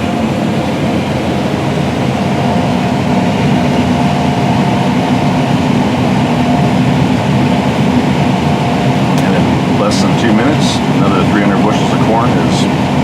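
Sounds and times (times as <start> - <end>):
combine harvester engine drone: 0.0 - 13.0
thin steady whine: 0.0 - 13.0.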